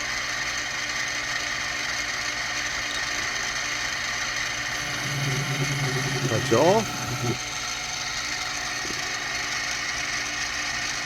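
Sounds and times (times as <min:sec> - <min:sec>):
mill motor whine and hum: 0:00.0 - 0:11.0.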